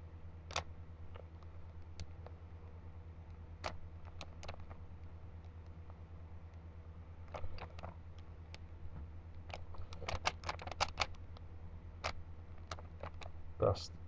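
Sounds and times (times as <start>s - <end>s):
low steady hum: 0.0s - 14.0s
puzzle cube plastic clicks: 9.4s - 11.2s, 12.0s - 13.3s.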